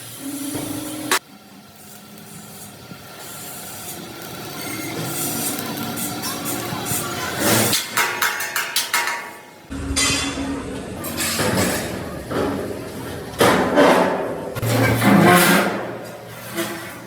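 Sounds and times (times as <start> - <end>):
harsh metalworking noise: 0.0 - 17.0.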